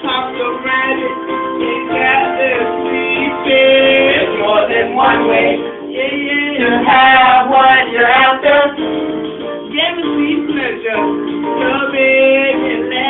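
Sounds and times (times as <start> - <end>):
man and woman singing: 0.0 - 8.8, 9.7 - 13.0.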